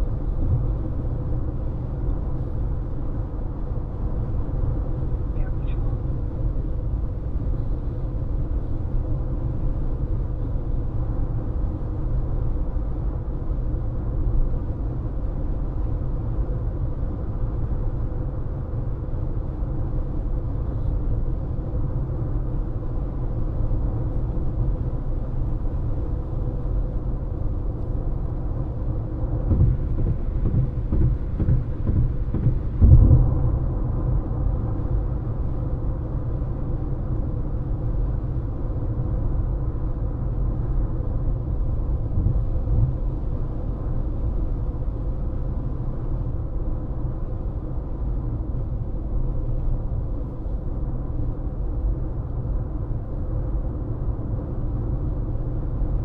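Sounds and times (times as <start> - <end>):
road and tyre rumble: 0.0 - 56.0
thumps: 29.5 - 33.2.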